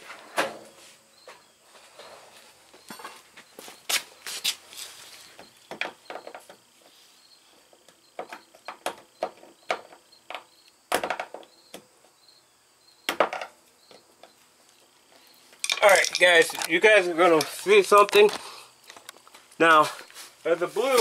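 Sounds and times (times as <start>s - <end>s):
tools clicking and knocking: 15.6s - 16.8s.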